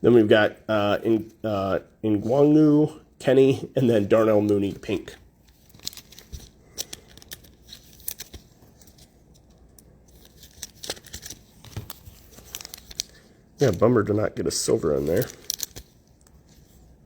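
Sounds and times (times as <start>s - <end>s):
trading cards clicking and rustling: 4.4s - 14.0s, 14.8s - 16.8s.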